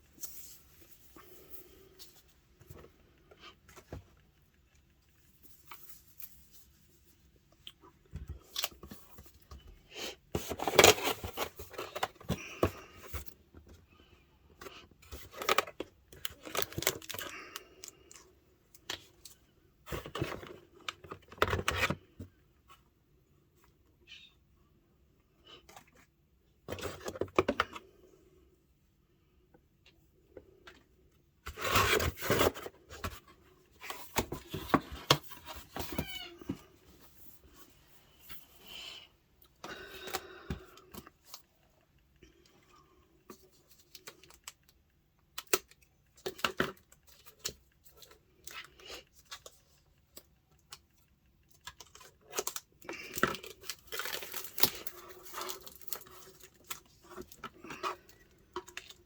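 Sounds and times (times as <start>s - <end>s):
packaging rustling and tearing: 15.2s - 18.2s, 51.7s - 58.0s.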